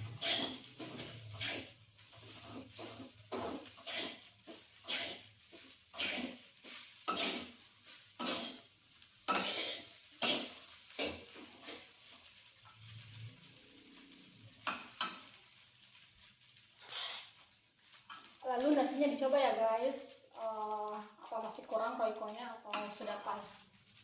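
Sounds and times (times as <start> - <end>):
spatula scraping frying pan: 0.0 - 16.0, 16.7 - 18.4, 22.6 - 23.6
food sizzling: 0.0 - 24.0.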